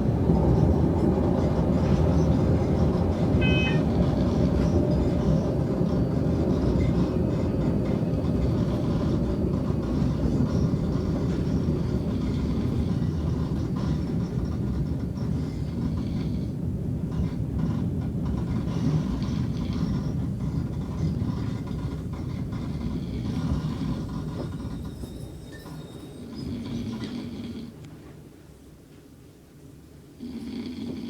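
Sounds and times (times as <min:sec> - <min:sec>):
subway train rumble: 0:00.0 - 0:31.0
short high-pitched tone: 0:03.4 - 0:04.0.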